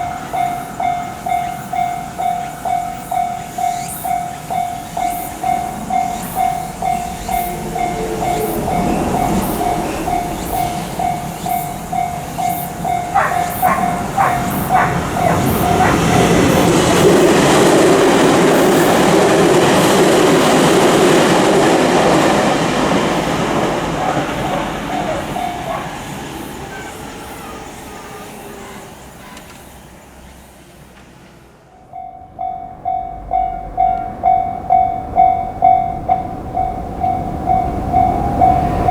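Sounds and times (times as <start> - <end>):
level-crossing alarm bell ringing: 0.0 - 17.2, 20.8 - 27.1, 31.8 - 38.9
train wheel clacks: 0.0 - 27.9
train rumble: 0.0 - 38.9.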